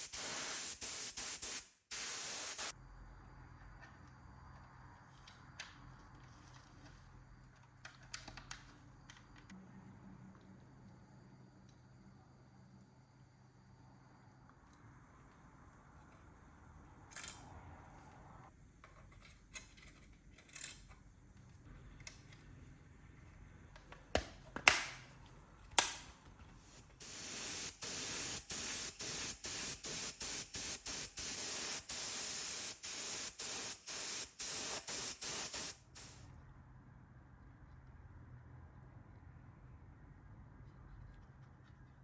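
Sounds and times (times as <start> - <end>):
paint spraying hiss: 0.0 - 2.8, 26.6 - 36.3.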